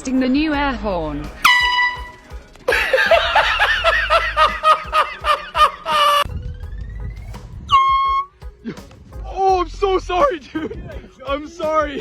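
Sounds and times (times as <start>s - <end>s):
air horn blast: 1.4s - 2.3s.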